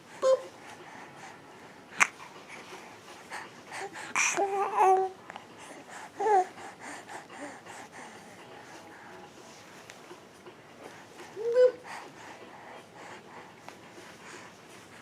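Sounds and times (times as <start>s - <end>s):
babbling vocal sounds: 3.7s - 5.2s, 5.9s - 6.5s, 11.2s - 12.1s.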